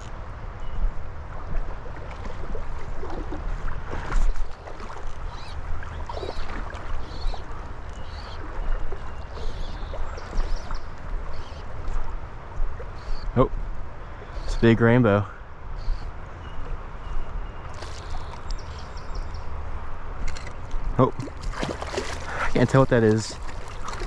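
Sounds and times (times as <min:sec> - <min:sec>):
river water running: 0:00.0 - 0:24.0
short splashes and knocks: 0:01.5 - 0:11.2, 0:17.7 - 0:18.8, 0:20.2 - 0:24.0.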